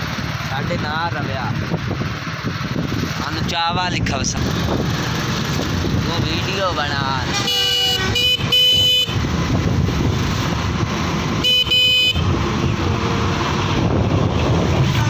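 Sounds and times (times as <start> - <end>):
road traffic noise: 0.0 - 15.0
vehicle horn honking: 7.3 - 9.2, 11.4 - 12.3.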